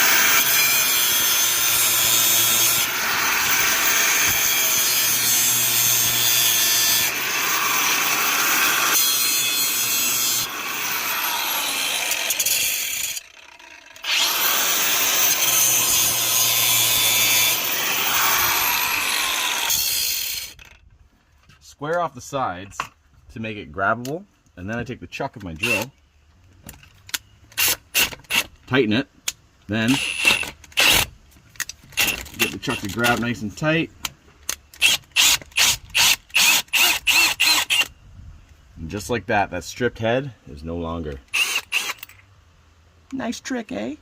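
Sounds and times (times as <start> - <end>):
power tool grinding metal: 0.0 - 20.6, 32.0 - 33.3.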